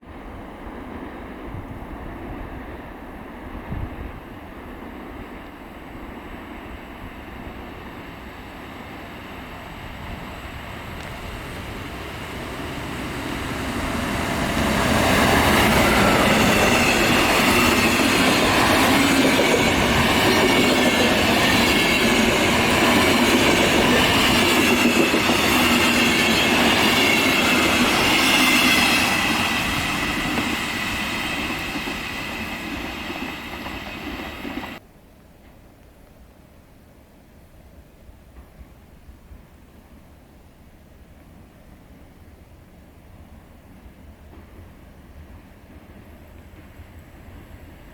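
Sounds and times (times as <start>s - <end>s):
passenger train passing at speed: 0.0s - 34.8s, 38.4s - 47.9s
train whine: 0.0s - 34.8s.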